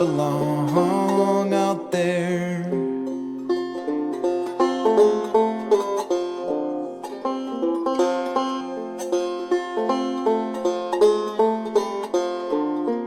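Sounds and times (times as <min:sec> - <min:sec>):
plucked string instrumental music: 0:00.0 - 0:13.0.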